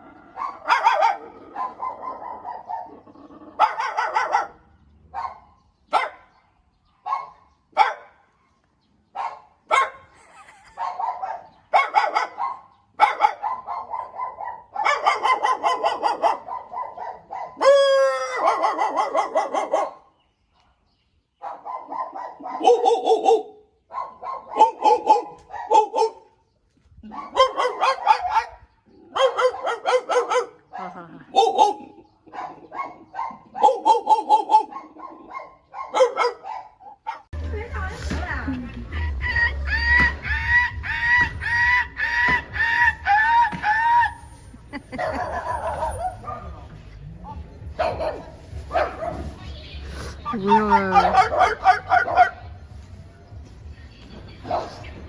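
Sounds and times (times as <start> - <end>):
dog barking: 0.4 - 6.4, 7.0 - 8.2, 9.1 - 10.1, 10.8 - 20.1, 21.4 - 26.4, 27.0 - 37.3, 44.9 - 49.4, 50.2 - 52.5, 54.4 - 54.9.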